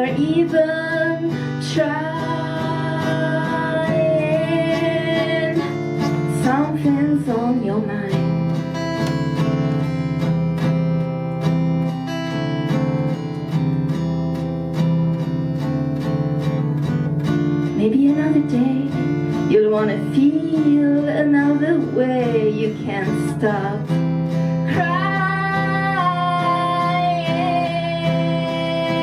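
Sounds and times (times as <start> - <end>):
woman singing long notes: 0.0 - 8.3, 24.7 - 29.0
acoustic guitar strumming: 0.0 - 29.0.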